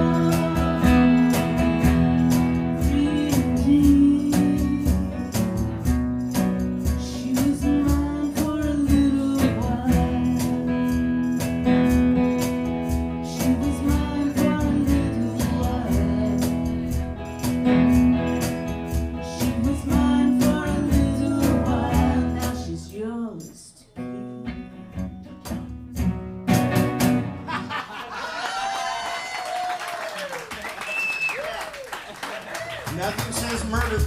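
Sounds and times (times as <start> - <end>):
strummed acoustic guitar: 0.0 - 23.1, 24.0 - 27.8.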